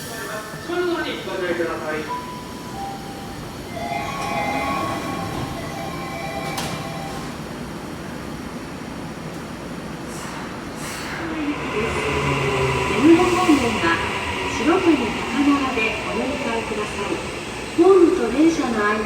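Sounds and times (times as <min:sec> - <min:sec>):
train wheels rumbling: 0:09.0 - 0:19.0
steady tones: 0:11.2 - 0:19.0.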